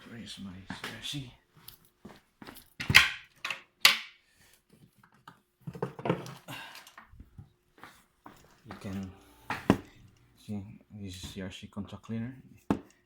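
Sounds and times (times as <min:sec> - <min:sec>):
shuffling and handling noise: 0:04.6 - 0:11.4.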